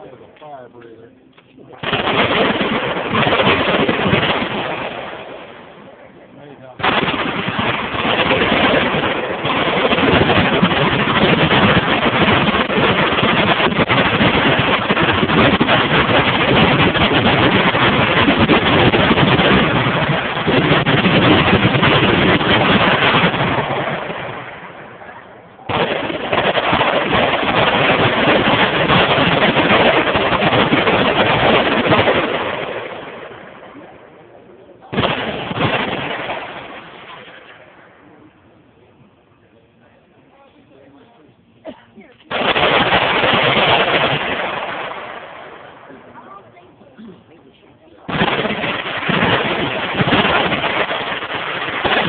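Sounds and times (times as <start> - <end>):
machine guns firing: 1.8 - 5.7, 6.8 - 24.8, 25.7 - 33.4, 34.9 - 37.5, 42.3 - 46.4, 48.0 - 52.0.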